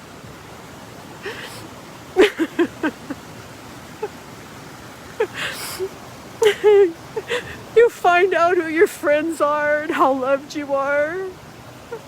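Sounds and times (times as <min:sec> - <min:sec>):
background hiss: 0:00.0 - 0:12.0
woman crying: 0:01.2 - 0:01.6, 0:02.2 - 0:03.2, 0:05.2 - 0:08.1.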